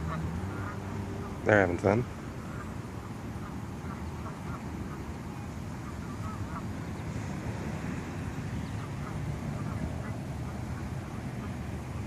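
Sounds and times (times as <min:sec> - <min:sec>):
geese honking: 0:00.0 - 0:01.4, 0:02.4 - 0:06.8, 0:08.7 - 0:11.7.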